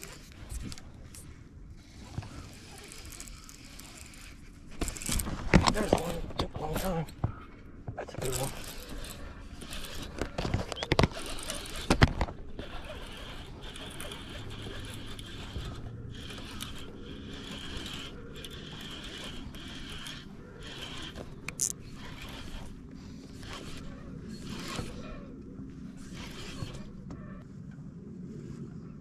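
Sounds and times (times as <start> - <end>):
fishing reel whirring and ratcheting: 0.0 - 7.2, 8.2 - 27.4
sharp clicks: 8.2 - 22.6.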